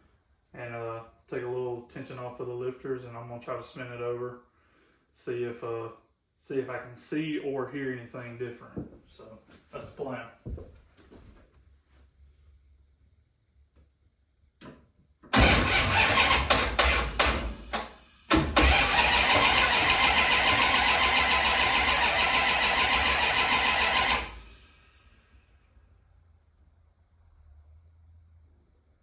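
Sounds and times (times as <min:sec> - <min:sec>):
engine starter cranking: 0:15.3 - 0:24.6.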